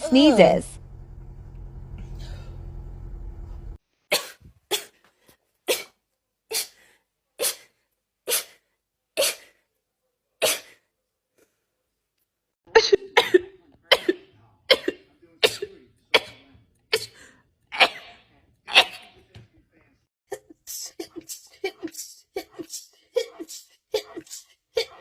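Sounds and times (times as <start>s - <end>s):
person sneezing: 7.4s - 8.6s, 9.2s - 9.6s, 10.4s - 10.8s, 17.8s - 19.2s, 20.3s - 25.0s.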